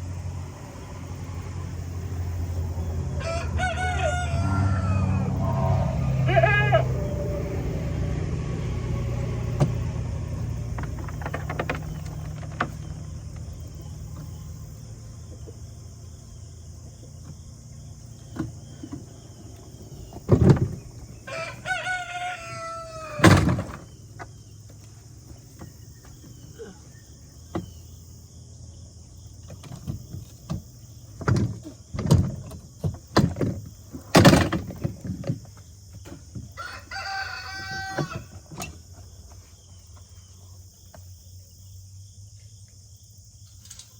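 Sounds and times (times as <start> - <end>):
rooster crowing: 3.0 - 8.0, 21.2 - 23.4, 36.5 - 38.5
sharp knocks and thumps: 9.5 - 14.4, 19.9 - 21.2, 23.2 - 24.4, 29.4 - 36.6.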